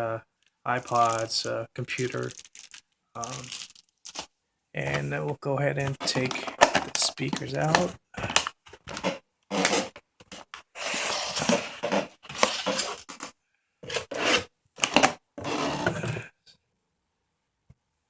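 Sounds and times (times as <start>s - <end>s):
cardboard box scraping and rustling: 5.8s - 7.0s, 8.9s - 16.3s.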